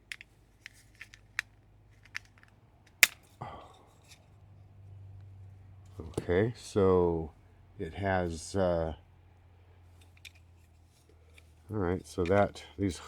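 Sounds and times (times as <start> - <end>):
plastic case clicks and snaps: 0.0 - 3.2.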